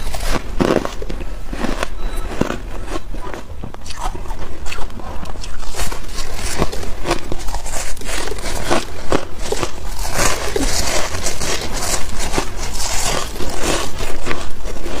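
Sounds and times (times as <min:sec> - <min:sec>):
crunching of freezer frost: 0:00.0 - 0:15.0.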